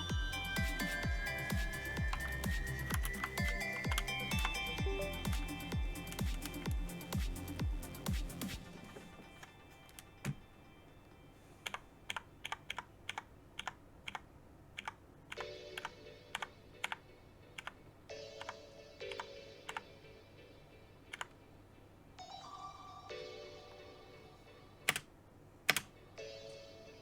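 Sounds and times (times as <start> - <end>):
mechanical keyboard typing: 0.0 - 8.3, 11.6 - 17.8, 18.4 - 19.9, 21.1 - 21.4, 24.8 - 25.1, 25.7 - 26.0
faint music with chiming tones: 0.0 - 12.2, 15.4 - 21.2, 22.2 - 25.0, 26.0 - 27.0.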